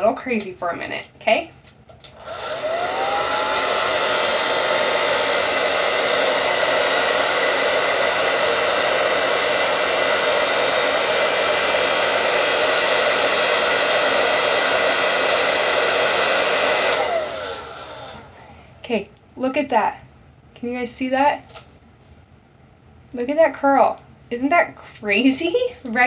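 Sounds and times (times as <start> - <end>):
blow dryer running: 2.0 - 18.9.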